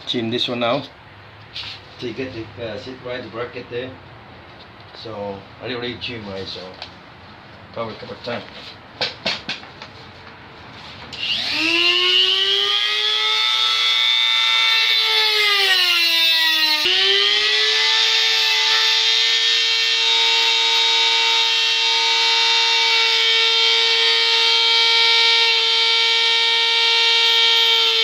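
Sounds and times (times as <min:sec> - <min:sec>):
handheld power tool whining: 0:11.1 - 0:28.0.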